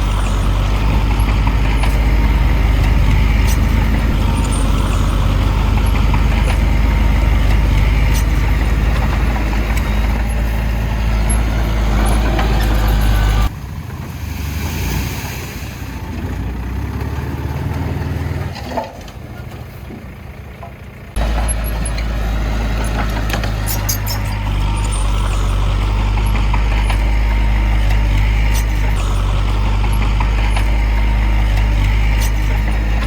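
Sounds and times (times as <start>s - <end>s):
diesel machinery engine running: 0.0s - 33.0s.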